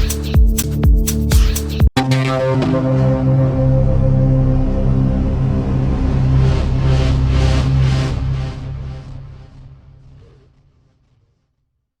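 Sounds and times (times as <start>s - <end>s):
electronic music with low bass: 0.0s - 9.0s.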